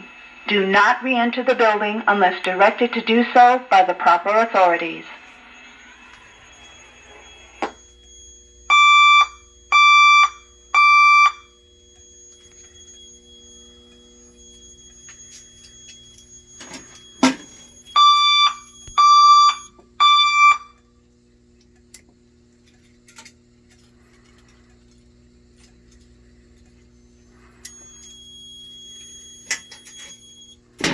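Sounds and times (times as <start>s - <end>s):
fire alarm tones: 0.0s - 21.1s, 21.9s - 30.9s
faint steady hum: 0.0s - 30.9s
click: 21.6s - 26.9s, 27.6s - 30.9s.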